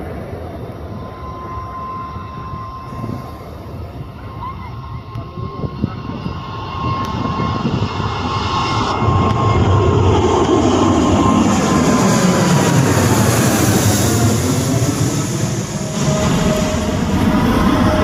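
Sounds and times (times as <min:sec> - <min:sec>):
jet engines whining: 0:00.0 - 0:18.0
low rumble: 0:05.6 - 0:18.0.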